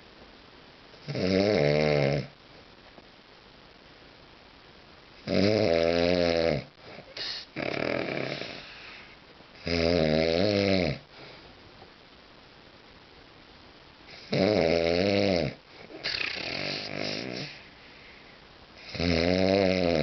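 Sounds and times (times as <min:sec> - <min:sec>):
man snoring heavily: 0:01.1 - 0:02.3, 0:05.3 - 0:08.9, 0:09.6 - 0:11.0, 0:14.2 - 0:17.6, 0:18.8 - 0:20.0
breathy exhale: 0:08.4 - 0:09.2, 0:16.8 - 0:18.5.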